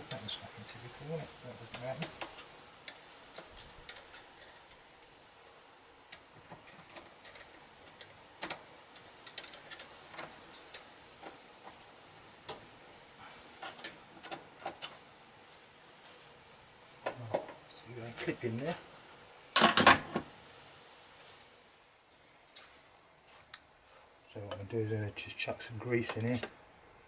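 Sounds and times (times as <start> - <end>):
small metallic clicks and taps: 6.1 - 11.8.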